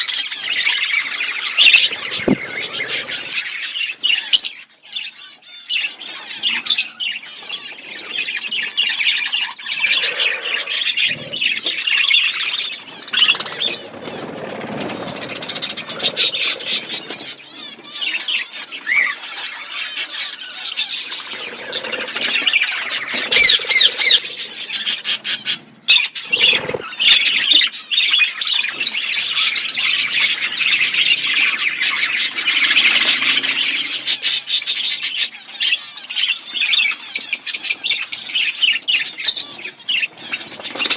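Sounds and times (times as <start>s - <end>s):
budgies chattering and chirping: 0.0s - 40.9s
wing flutters: 12.2s - 17.6s, 40.1s - 40.9s.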